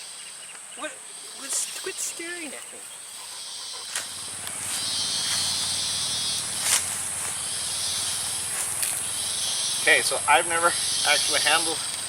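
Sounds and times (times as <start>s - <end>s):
high-pitched insect drone: 1.1s - 12.0s
insect pulsing trill: 1.1s - 12.0s.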